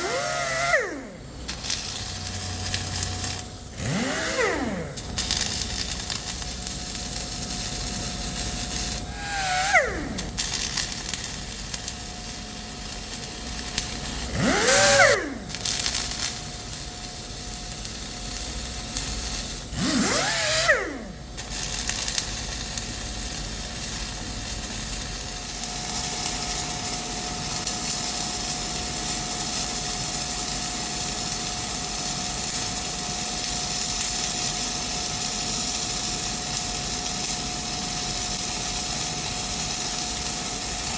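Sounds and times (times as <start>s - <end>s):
short rising and falling whines: 0.0s - 1.3s, 3.8s - 5.0s, 9.1s - 10.4s, 14.3s - 15.5s, 19.8s - 21.2s
welding arc sizzle: 0.0s - 40.9s.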